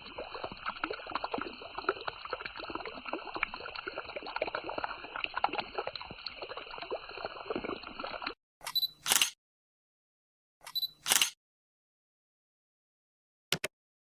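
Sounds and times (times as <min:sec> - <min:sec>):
water gurgling and splashing: 0:00.0 - 0:08.4.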